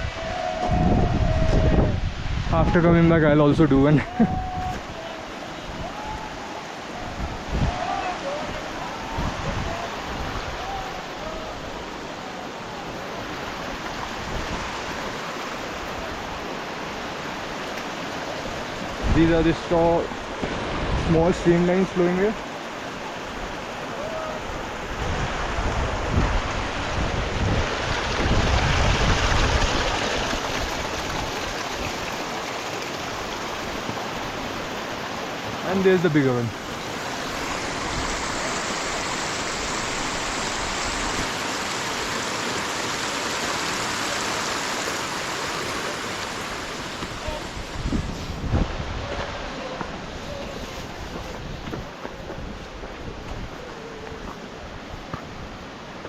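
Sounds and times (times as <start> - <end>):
wind rumble on microphone: 0.0 - 5.0, 7.0 - 7.9, 9.0 - 11.8, 24.4 - 31.9, 47.0 - 55.6
waterfall rushing: 0.0 - 51.4
streams flowing: 0.0 - 56.0.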